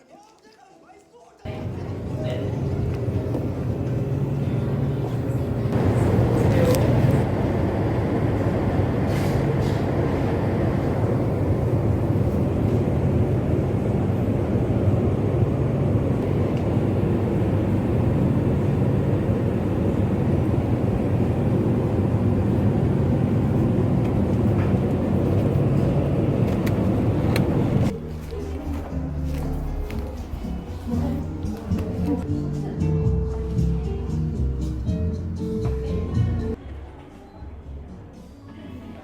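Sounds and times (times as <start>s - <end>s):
vehicle rumble: 1.5s - 32.3s.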